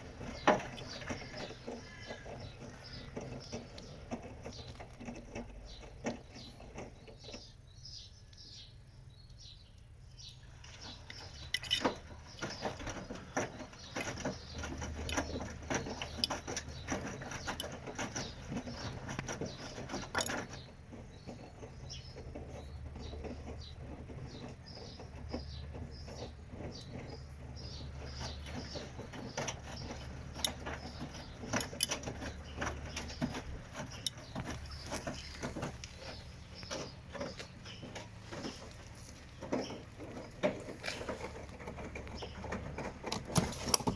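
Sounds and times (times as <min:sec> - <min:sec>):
washing machine motor hum: 0:00.0 - 0:06.0.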